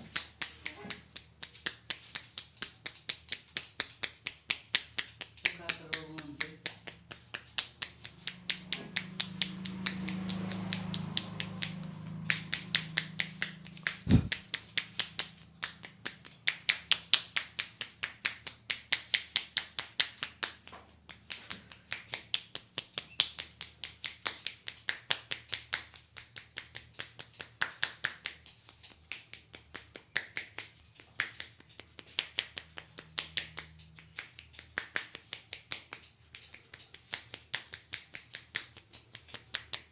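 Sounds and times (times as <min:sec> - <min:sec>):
hands tapping on scalp: 0:00.1 - 0:11.7, 0:12.3 - 0:14.6, 0:15.2 - 0:39.9
sharp thump: 0:14.1 - 0:14.4.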